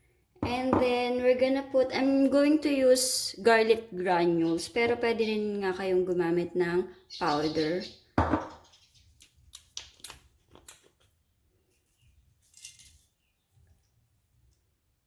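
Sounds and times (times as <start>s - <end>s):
knock: 8.2s - 8.6s.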